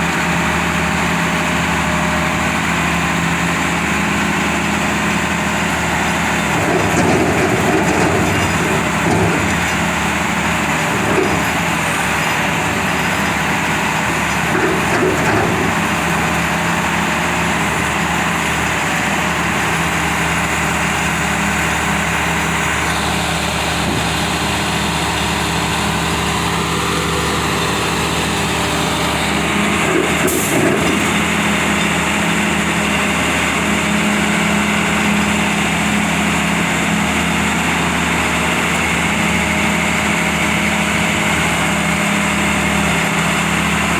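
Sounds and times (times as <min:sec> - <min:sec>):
diesel engine running: 0:00.0 - 0:43.9
clunk: 0:06.4 - 0:10.2, 0:10.8 - 0:16.4, 0:29.8 - 0:32.0.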